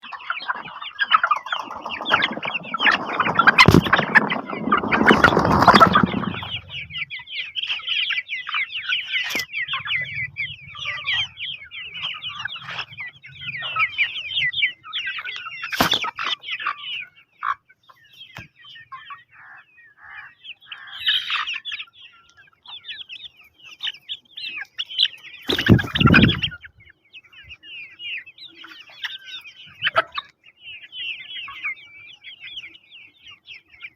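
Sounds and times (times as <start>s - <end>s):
chickens clucking: 0.0s - 33.9s
wings flapping and rustling: 0.4s - 7.0s, 15.7s - 16.3s, 25.4s - 26.6s.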